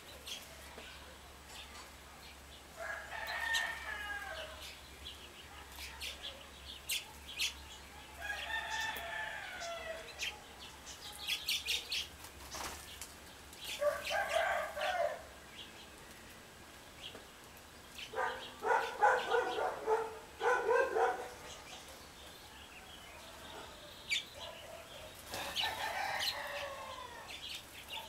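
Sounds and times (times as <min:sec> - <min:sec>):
songbirds chirping: 0:00.0 - 0:28.0
rooster crowing: 0:02.8 - 0:04.6, 0:08.2 - 0:10.1, 0:13.8 - 0:15.3, 0:25.4 - 0:27.4.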